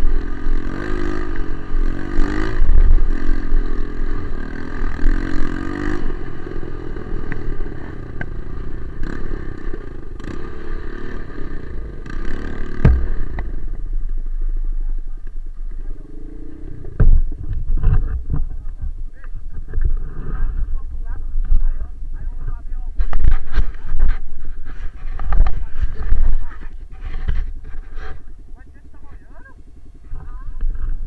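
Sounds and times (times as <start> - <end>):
motorcycle engine revving: 0.0 - 31.0
bike clattering over rough ground: 12.0 - 14.4.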